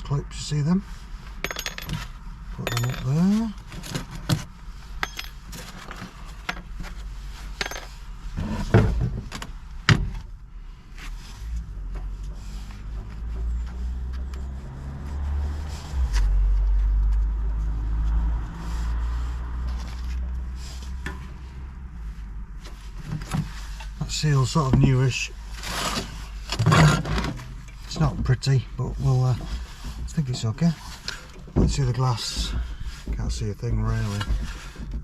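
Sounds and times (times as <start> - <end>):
metal clinks and scrapes: 1.4 - 8.6.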